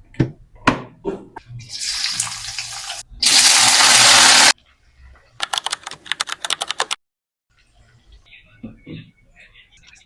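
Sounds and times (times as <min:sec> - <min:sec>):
water running from a tap: 0:01.8 - 0:04.5.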